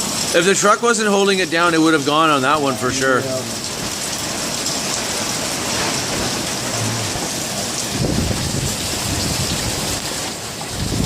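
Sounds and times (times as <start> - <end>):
heavy rain hissing: 0.0 - 11.0
wind buffeting microphone: 4.3 - 11.0.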